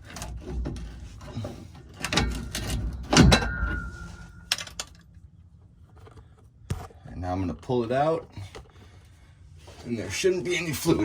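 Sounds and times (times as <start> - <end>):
metal tools knocking and scraping: 0.1 - 5.0
ringing metallic clank: 2.2 - 5.2.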